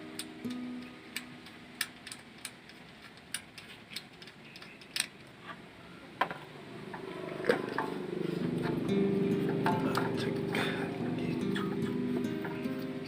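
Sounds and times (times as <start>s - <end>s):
hand tools clicking and tapping: 0.0s - 5.3s, 6.2s - 13.0s
background music: 7.1s - 13.0s.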